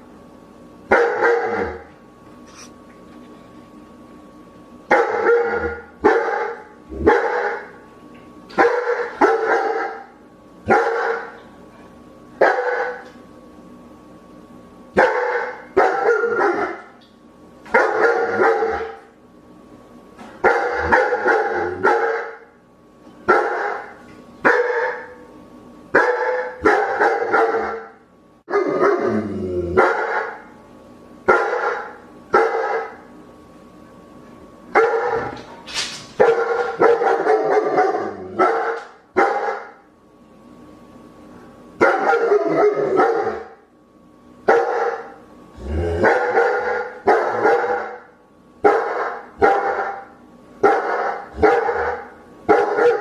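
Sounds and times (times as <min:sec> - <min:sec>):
dog barking: 0:00.9 - 0:01.8, 0:04.9 - 0:07.7, 0:08.6 - 0:10.1, 0:10.7 - 0:11.4, 0:12.4 - 0:13.0, 0:15.0 - 0:16.9, 0:17.7 - 0:19.0, 0:20.4 - 0:22.5, 0:23.3 - 0:25.2, 0:26.0 - 0:29.0, 0:29.8 - 0:30.5, 0:31.3 - 0:33.0, 0:34.8 - 0:35.4, 0:36.2 - 0:39.8, 0:41.8 - 0:43.6, 0:44.5 - 0:45.2, 0:46.0 - 0:53.0.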